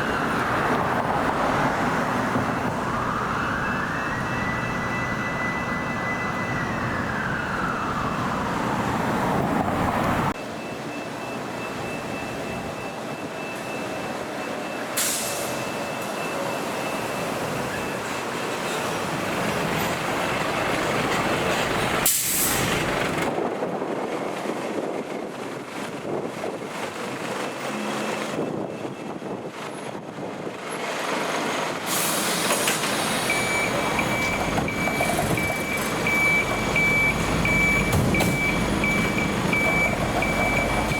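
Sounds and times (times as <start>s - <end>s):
fire truck siren winding down: 0.0s - 13.2s, 32.4s - 40.9s
reversing beeper: 2.9s - 8.5s, 10.4s - 18.8s, 33.0s - 40.9s
air brake hisses: 15.0s - 15.6s, 22.0s - 22.8s, 31.8s - 33.4s.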